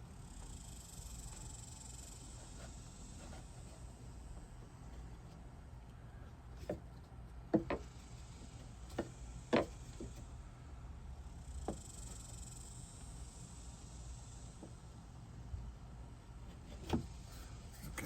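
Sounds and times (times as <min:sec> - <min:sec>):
wooden strips knocking: 0:07.5 - 0:07.9.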